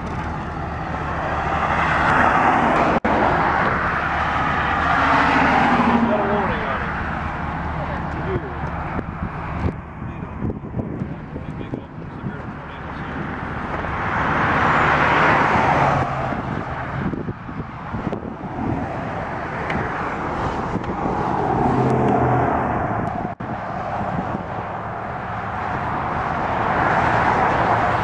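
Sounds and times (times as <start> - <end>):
car engine hum: 0.0 - 28.0
tyre road noise: 0.0 - 28.0.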